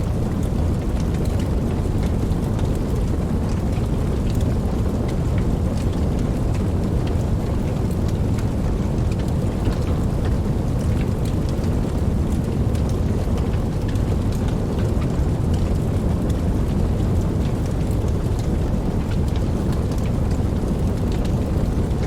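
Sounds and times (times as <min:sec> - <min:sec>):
heavy rain: 0:00.0 - 0:22.0
sharp ticks of raindrops: 0:00.0 - 0:22.0.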